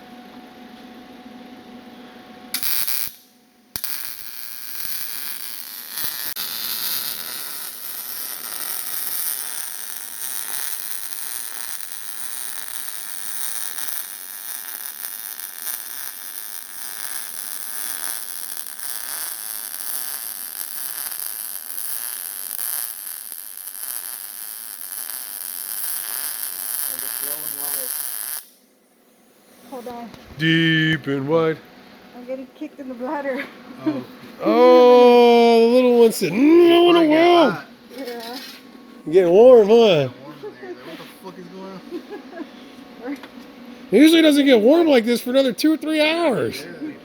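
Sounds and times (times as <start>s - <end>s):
welding arc crackling: 2.5s - 28.6s, 44.0s - 46.5s.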